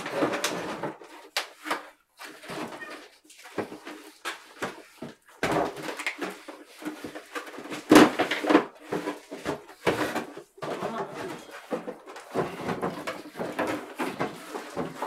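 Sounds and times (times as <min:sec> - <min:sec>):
toy packaging crinkling and clicking: 0:05.6 - 0:15.0.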